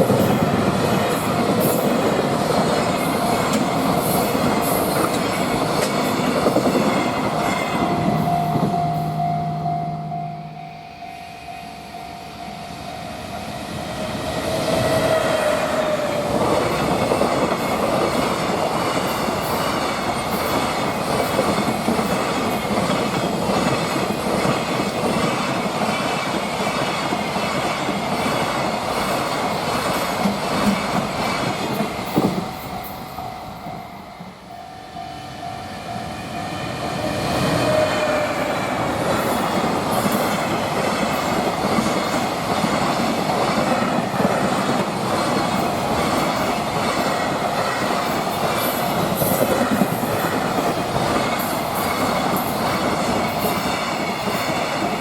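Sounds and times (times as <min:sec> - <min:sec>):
train wheels clattering over rails: 0:00.0 - 0:08.7, 0:14.2 - 0:32.8, 0:37.0 - 0:55.0
level crossing warning bell: 0:06.5 - 0:15.3, 0:32.4 - 0:39.8.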